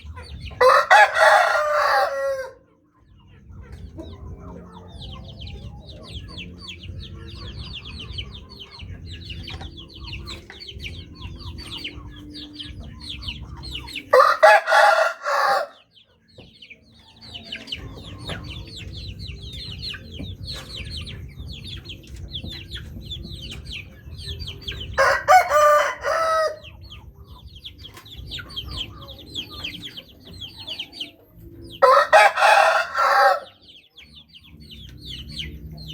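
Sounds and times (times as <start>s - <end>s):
rooster crowing: 0.6s - 2.6s, 14.1s - 15.8s, 25.0s - 26.6s, 31.8s - 33.6s.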